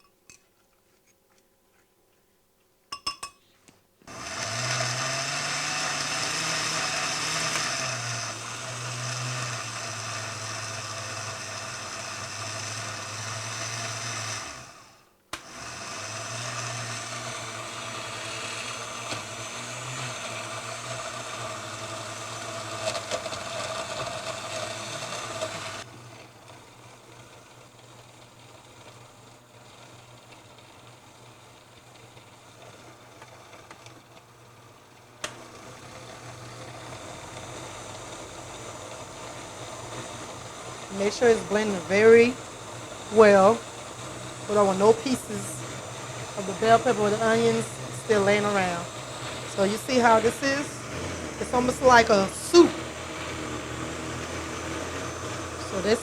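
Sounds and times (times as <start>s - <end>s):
clinks: 2.9s - 3.5s
blender running: 4.1s - 56.0s.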